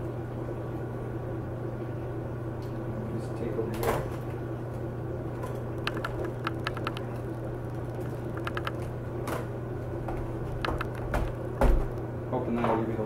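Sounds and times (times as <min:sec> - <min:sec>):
steady low hum: 0:00.0 - 0:13.0
screwdriver clicks and taps: 0:05.8 - 0:07.1, 0:07.8 - 0:08.8, 0:10.6 - 0:11.4.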